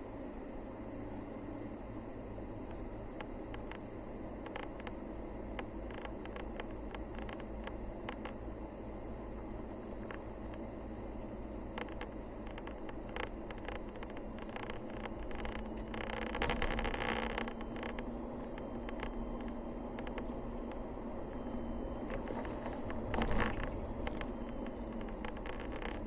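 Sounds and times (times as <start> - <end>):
vehicle engine and tyre rumble: 0.0 - 26.0
small clicks and rattles: 2.7 - 8.4, 10.0 - 10.7, 11.7 - 20.8, 22.1 - 26.0.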